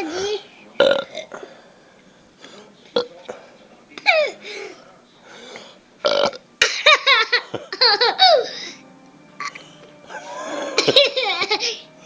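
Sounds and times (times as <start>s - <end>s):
boy giggling: 6.9s - 8.6s, 10.1s - 11.8s.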